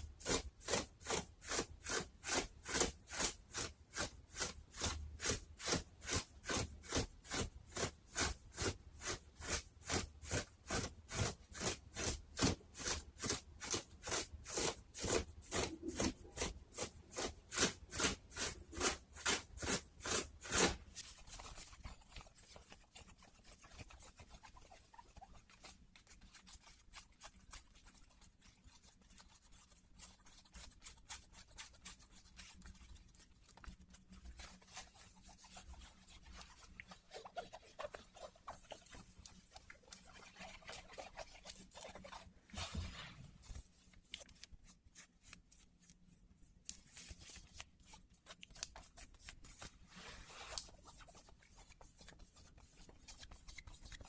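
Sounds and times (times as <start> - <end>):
denim fabric scratching: 0.0 - 54.0
fabric rubbing: 0.2 - 26.7, 32.4 - 54.0.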